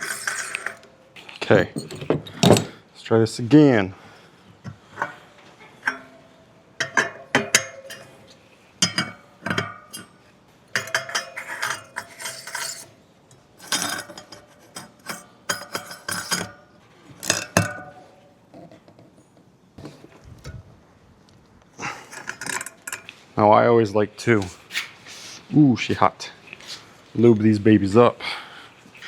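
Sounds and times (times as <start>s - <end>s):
metal brake rotor clinking: 0.0s - 0.9s, 4.6s - 18.2s, 22.0s - 23.1s.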